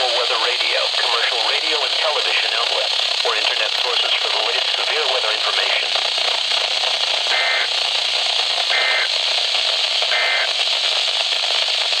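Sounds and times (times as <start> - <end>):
radio static hiss: 0.0 - 12.0
two-tone digital data bursts: 8.7 - 9.1, 10.1 - 10.5.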